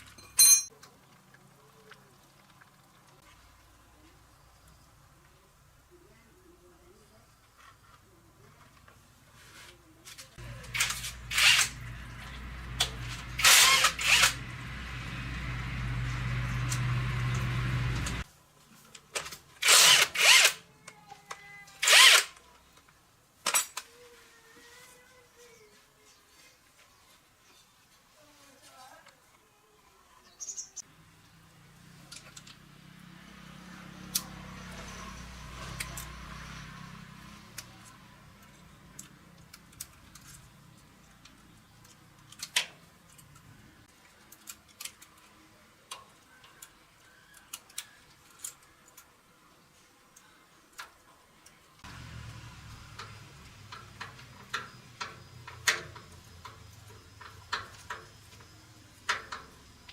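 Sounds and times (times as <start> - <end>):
metal tools clicking and tapping: 0.0 - 0.8, 52.9 - 59.9.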